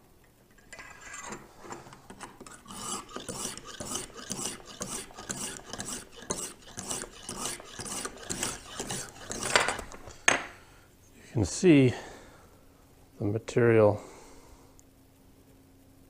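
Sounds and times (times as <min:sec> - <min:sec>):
honing stone rasping on knife: 0:02.4 - 0:10.0.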